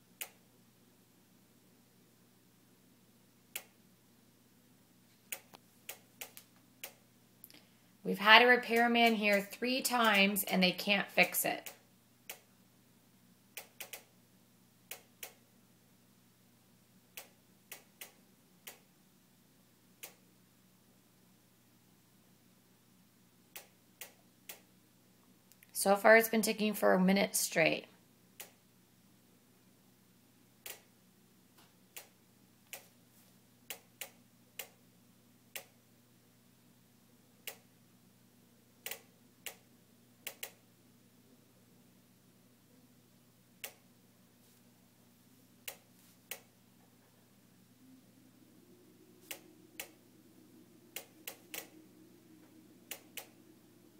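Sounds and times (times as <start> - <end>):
faint steady hum: 0.0 - 53.9
stove ticking clicks: 8.7 - 10.6, 52.9 - 53.3.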